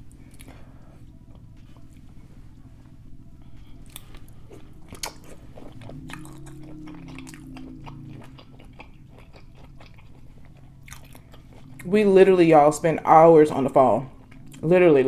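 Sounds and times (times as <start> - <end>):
close chewing with wet mouth clicks: 3.8 - 12.7, 13.5 - 14.7.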